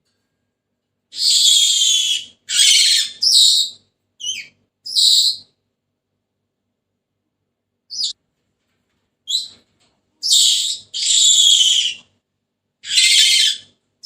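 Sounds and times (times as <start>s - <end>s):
parrot harsh calls: 1.1s - 5.4s, 10.2s - 12.0s, 12.8s - 13.7s
parrot chirps: 1.2s - 5.5s, 7.9s - 8.2s, 10.2s - 12.0s, 12.8s - 13.7s.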